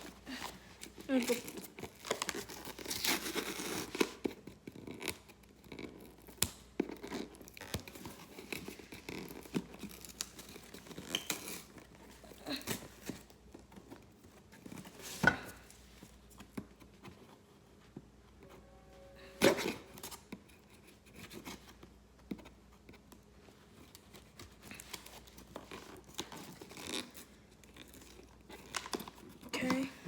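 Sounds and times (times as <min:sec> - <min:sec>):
wrapping tearing and crinkling: 0:00.0 - 0:14.6, 0:23.8 - 0:30.0.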